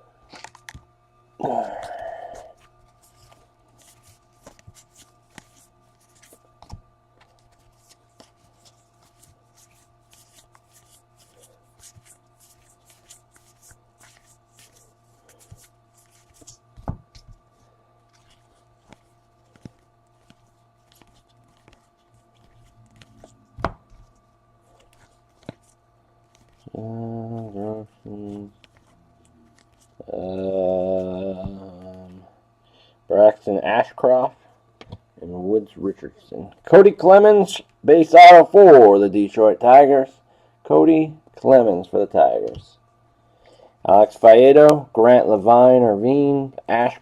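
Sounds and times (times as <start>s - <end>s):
faint steady hum: 0.0s - 47.0s
cards flicking and rustling: 0.2s - 0.9s, 1.7s - 32.1s.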